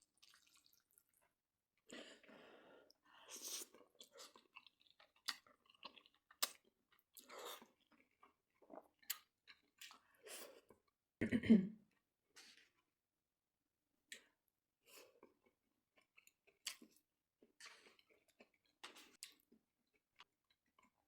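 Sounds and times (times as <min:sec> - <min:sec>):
person chewing and biting food: 0:03.4 - 0:10.0.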